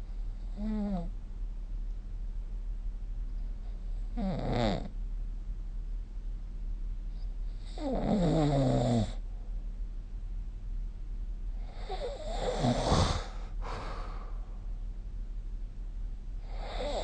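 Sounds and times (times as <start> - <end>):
steady low hum: 0.0 - 17.0
person snoring: 11.7 - 14.3, 16.5 - 17.0.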